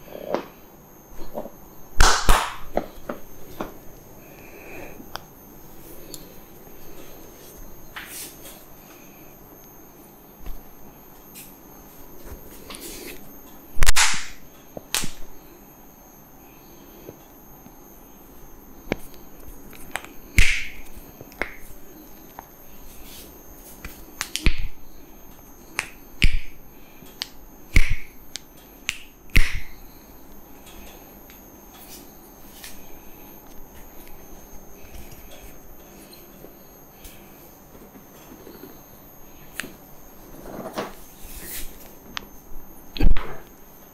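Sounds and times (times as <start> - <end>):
hand claps and slaps on head: 2.0 - 2.8, 13.9 - 15.2, 20.4 - 20.8, 25.8 - 26.5, 27.2 - 29.7.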